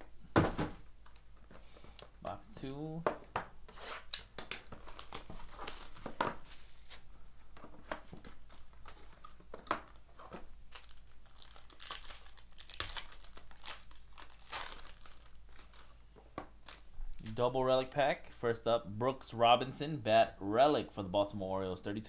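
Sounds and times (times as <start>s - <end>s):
plastic wrapping tearing: 4.0s - 7.0s, 10.7s - 16.0s.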